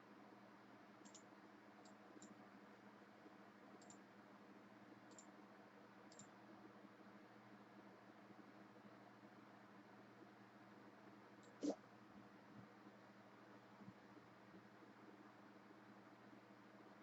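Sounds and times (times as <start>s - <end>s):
quiet steady hum: 0.0s - 17.0s
computer mouse clicks: 1.0s - 2.4s, 3.8s - 4.0s, 5.1s - 5.3s, 6.1s - 6.4s, 11.4s - 11.8s.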